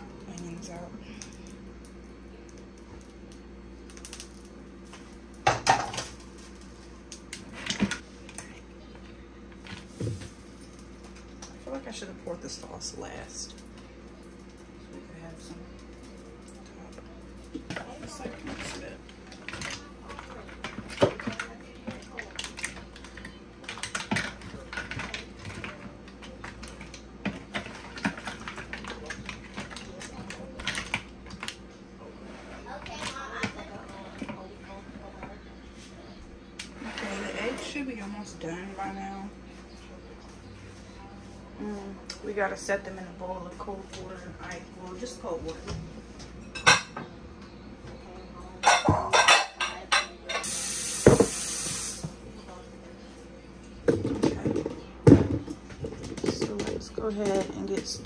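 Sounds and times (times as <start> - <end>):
seafood clattering in a bowl: 17.6 - 31.6, 53.9 - 58.0.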